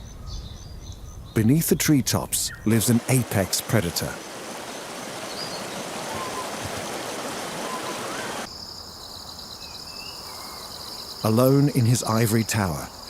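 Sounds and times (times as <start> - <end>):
running water: 2.6 - 8.5
crickets trilling: 2.7 - 13.0
faint bird chirps: 5.2 - 11.4.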